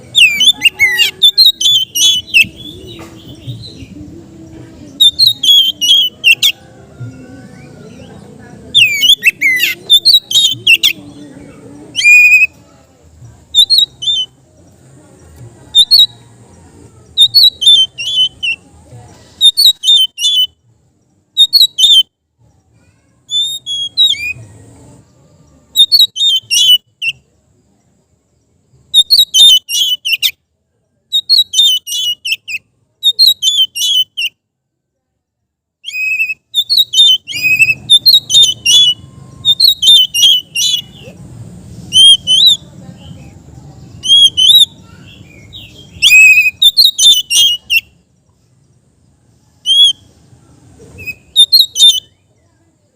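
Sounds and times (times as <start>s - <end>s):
magpie-robin singing whistled phrases: 0.0s - 4.0s, 4.9s - 12.6s, 13.5s - 14.4s, 15.7s - 16.3s, 17.1s - 18.7s, 19.3s - 20.6s, 21.3s - 22.1s, 23.2s - 24.5s, 25.7s - 27.2s, 28.8s - 30.4s, 31.1s - 34.4s, 35.8s - 41.2s, 41.9s - 48.1s, 49.6s - 52.3s.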